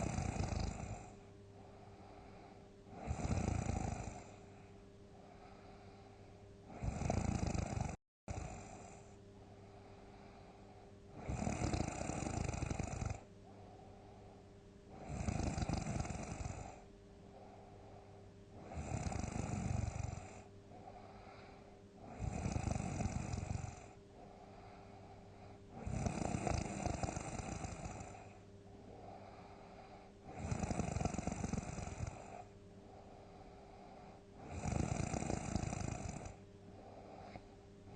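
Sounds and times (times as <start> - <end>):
person snoring loudly: 0.0 - 1.2, 2.1 - 4.4, 6.7 - 9.2, 11.2 - 13.3, 14.9 - 16.8, 18.6 - 24.0, 25.7 - 28.4, 30.3 - 32.5, 34.4 - 37.4.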